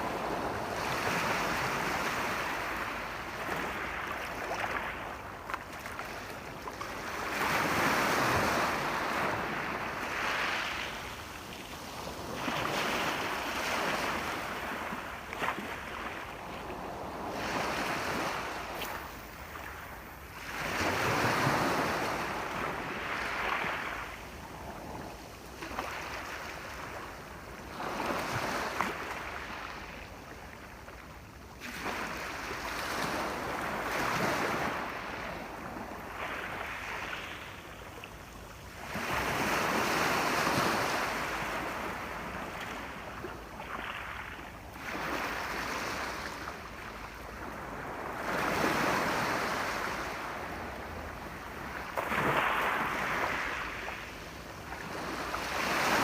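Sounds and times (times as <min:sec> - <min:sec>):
ocean waves washing onto shore: 0:31.6 - 0:56.0.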